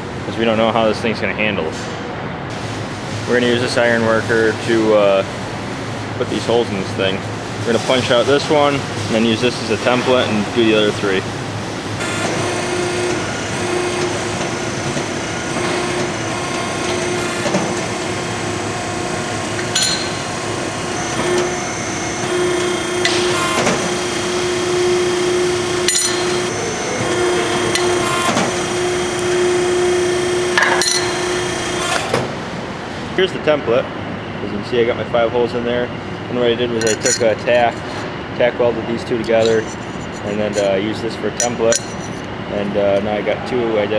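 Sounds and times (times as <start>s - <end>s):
metallic clanks of punch: 19.8s - 20.3s.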